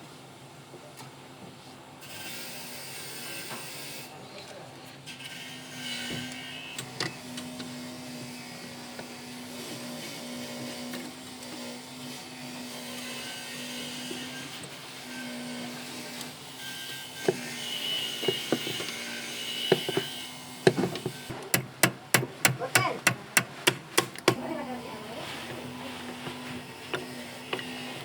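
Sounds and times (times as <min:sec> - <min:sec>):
sharp knocks: 0:20.7 - 0:24.4.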